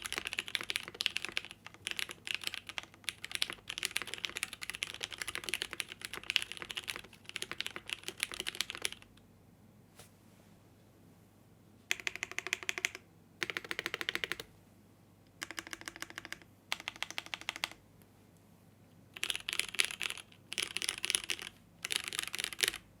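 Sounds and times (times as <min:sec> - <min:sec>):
mechanical keyboard typing: 0:00.0 - 0:09.1, 0:11.9 - 0:14.5, 0:15.4 - 0:17.8, 0:19.2 - 0:22.9.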